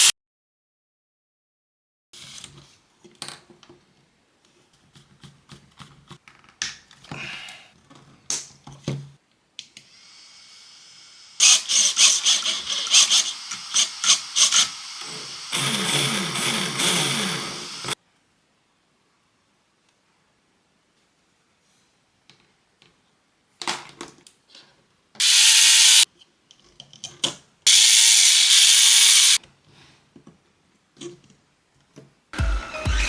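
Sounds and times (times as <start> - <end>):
small power tool motor: 11.4 - 18.0, 25.2 - 26.0, 27.7 - 29.4.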